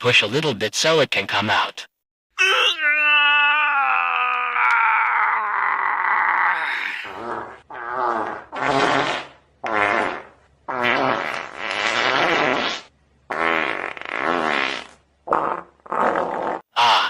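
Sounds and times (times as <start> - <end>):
person straining buzzy grunts: 5.5 - 9.1.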